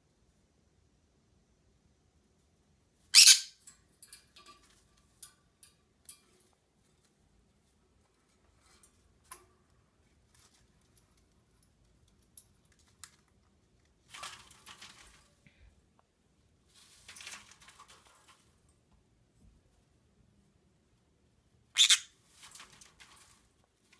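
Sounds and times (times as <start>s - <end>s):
rustling crinkling noises: 3.7s - 20.5s, 22.1s - 23.9s.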